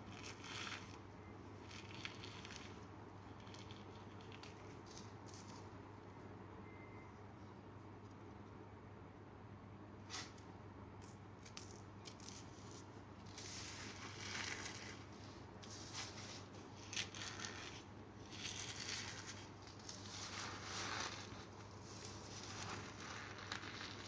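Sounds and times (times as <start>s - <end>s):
cornstarch squeaky crunching: 0.0s - 1.0s, 1.6s - 5.7s, 12.1s - 24.0s.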